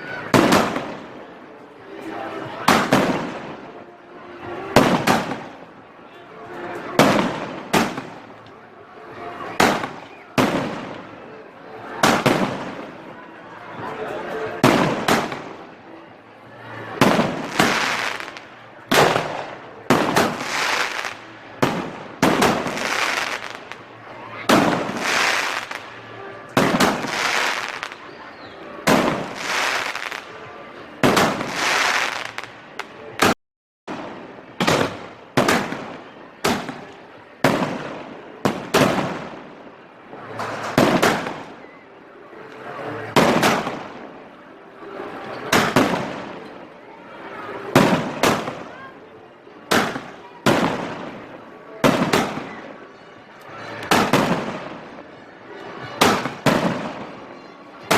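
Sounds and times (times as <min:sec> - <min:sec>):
fireworks crackling and hissing: 0:00.2 - 0:01.2, 0:02.3 - 0:03.8, 0:06.8 - 0:08.6, 0:16.8 - 0:28.2, 0:28.9 - 0:30.4, 0:31.0 - 0:41.6, 0:56.0 - 0:57.1
fireworks banging: 0:00.3 - 0:01.2, 0:02.6 - 0:03.7, 0:04.7 - 0:05.7, 0:06.8 - 0:08.4, 0:12.0 - 0:13.0, 0:14.6 - 0:15.6, 0:17.0 - 0:28.0, 0:28.8 - 0:30.3, 0:31.0 - 0:39.5, 0:40.2 - 0:41.6, 0:43.1 - 0:44.1, 0:45.4 - 0:46.5, 0:47.7 - 0:48.7, 0:49.7 - 0:52.6, 0:53.8 - 0:54.8, 0:56.0 - 0:57.1.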